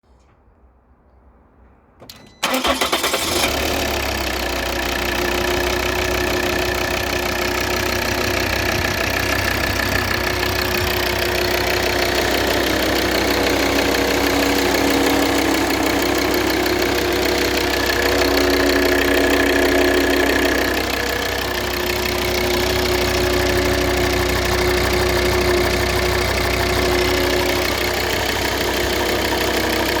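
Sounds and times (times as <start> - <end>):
car engine idling: 2.4 - 30.0
whining tone: 6.6 - 30.0.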